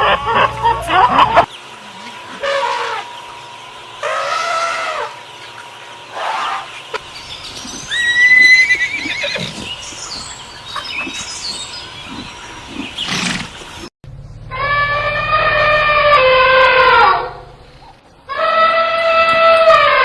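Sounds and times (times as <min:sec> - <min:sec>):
horse neighing: 0:07.9 - 0:09.7, 0:12.1 - 0:13.6.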